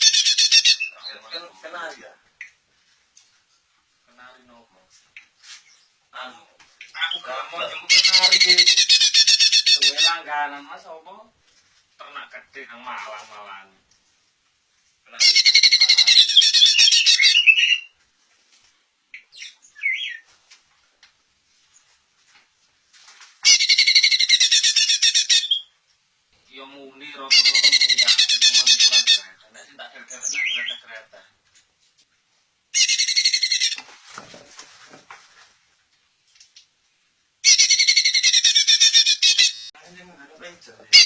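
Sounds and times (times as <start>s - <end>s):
songbird singing: 6.8s - 10.2s, 15.1s - 18.0s, 19.1s - 20.3s, 27.3s - 31.0s
bird chirps: 15.2s - 18.0s, 19.2s - 20.3s, 23.4s - 25.7s, 27.3s - 29.3s, 30.0s - 30.9s, 37.4s - 39.7s.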